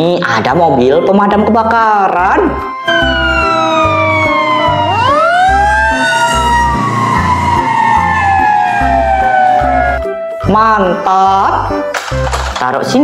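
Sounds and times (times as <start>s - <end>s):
music with low beat: 2.4s - 10.3s
fire engine siren wailing: 2.4s - 10.5s.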